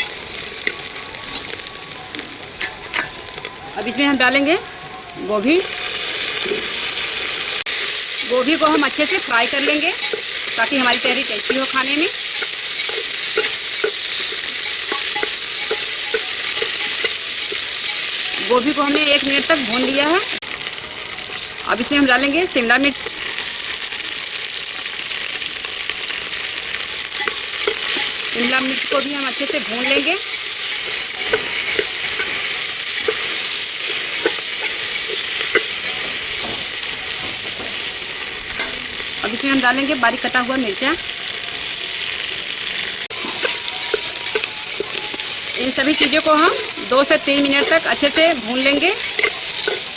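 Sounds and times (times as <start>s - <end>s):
vegetables sizzling in hot fat: 0.0s - 49.9s
spoon scraping and knocking pot: 8.2s - 20.0s, 27.1s - 37.9s, 43.2s - 49.9s.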